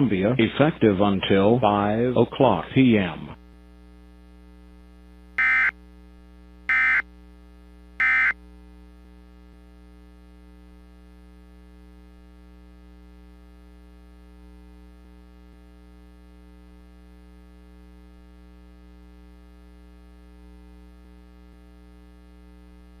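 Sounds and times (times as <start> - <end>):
steady electronic hum: 0.0 - 23.0
warbling digital data tones: 5.4 - 5.7.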